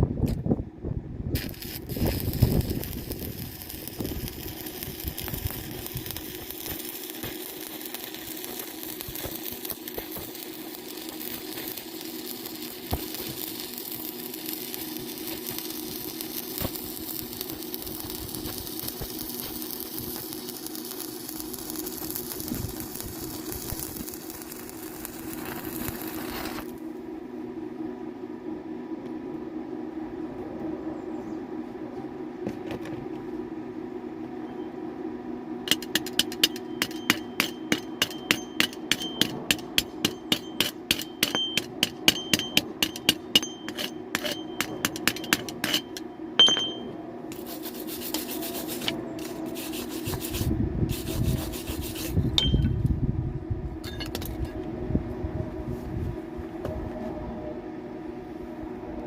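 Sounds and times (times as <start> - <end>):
hiss of grinding: 1.4 - 26.8, 47.3 - 52.3.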